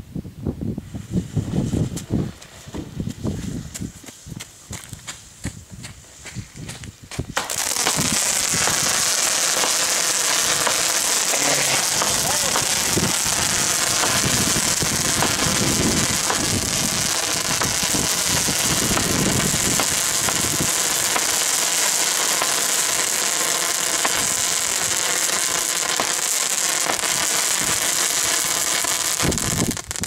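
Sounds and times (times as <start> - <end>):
firework crackles: 0.8 - 4.6, 7.1 - 30.0
firework fountain hissing: 7.4 - 30.0.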